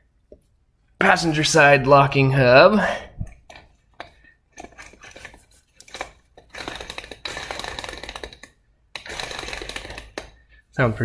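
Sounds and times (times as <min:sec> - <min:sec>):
metal hub rattling and grinding: 0:04.6 - 0:10.4.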